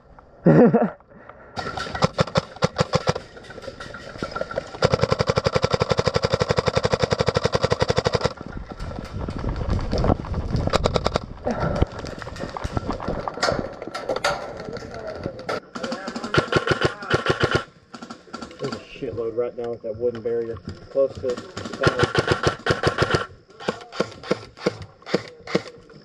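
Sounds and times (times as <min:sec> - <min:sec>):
airsoft gun shots: 0:15.9 - 0:17.7, 0:21.8 - 0:25.8.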